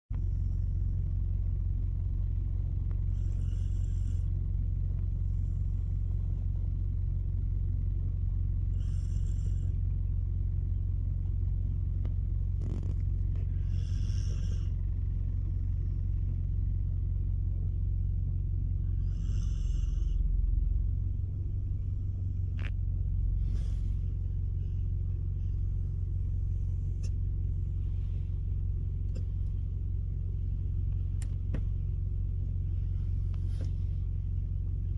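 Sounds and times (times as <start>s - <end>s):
dog snoring: 3.1s - 4.3s, 8.7s - 9.8s, 12.6s - 14.8s, 18.8s - 20.3s.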